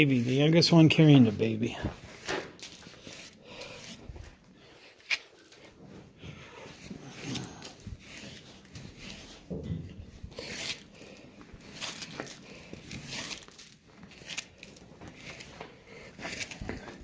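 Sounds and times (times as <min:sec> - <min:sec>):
dry rustling and crunching: 0:07.0 - 0:17.0.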